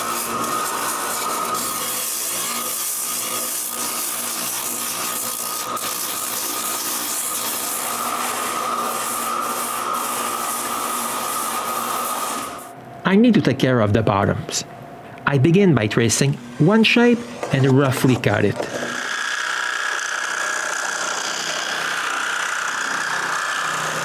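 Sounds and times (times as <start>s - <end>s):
electric sander whining: 16.4s - 24.0s.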